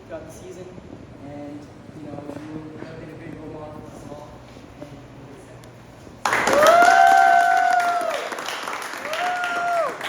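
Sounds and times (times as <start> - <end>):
group applauding: 6.2 - 10.0
woo cheers: 6.4 - 10.0.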